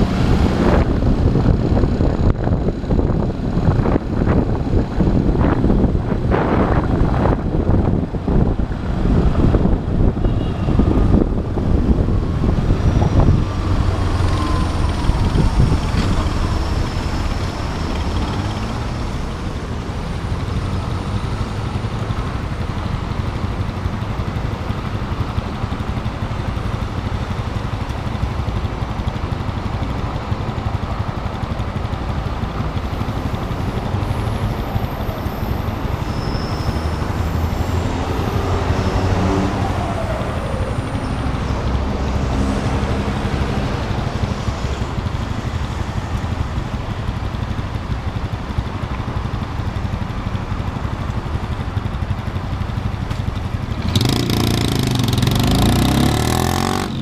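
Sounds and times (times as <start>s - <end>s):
wind rumble on microphone: 0.0s - 22.0s
motorcycle engine running: 0.0s - 39.0s, 39.7s - 57.0s.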